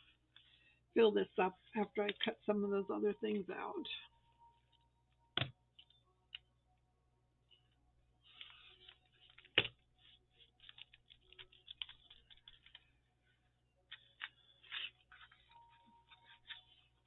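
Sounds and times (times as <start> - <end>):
paper crackling and tapping: 8.3 - 13.0.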